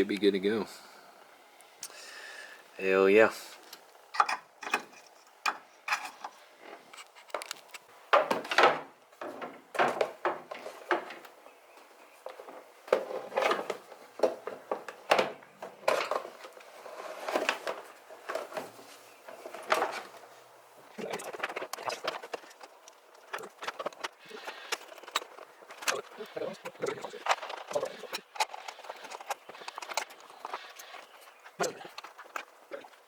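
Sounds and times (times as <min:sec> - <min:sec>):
metal tools clinking and scraping: 0:03.7 - 0:07.8, 0:21.0 - 0:33.0.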